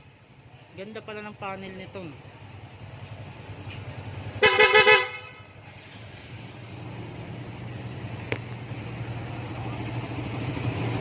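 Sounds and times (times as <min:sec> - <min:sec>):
scooter horn short toots: 0:04.4 - 0:05.6.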